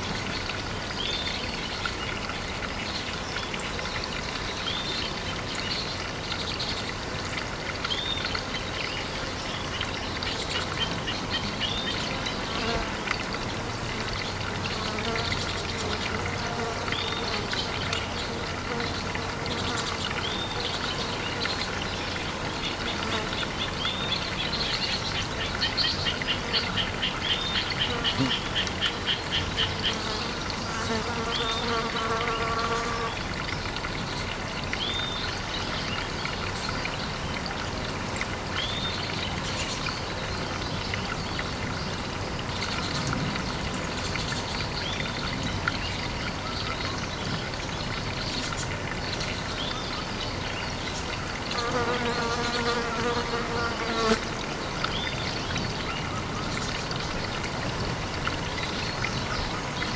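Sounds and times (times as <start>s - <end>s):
water trickling: 0.0s - 59.9s.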